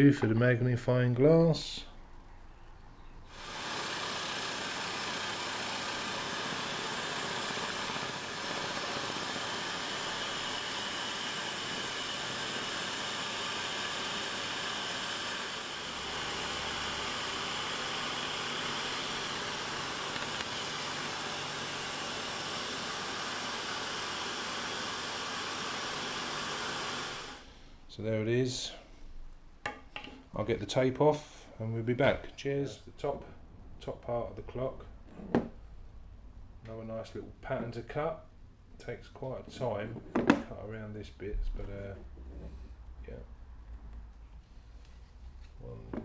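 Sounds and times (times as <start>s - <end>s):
scroll saw running: 3.3s - 27.5s
vacuum hose hissing: 3.3s - 27.6s.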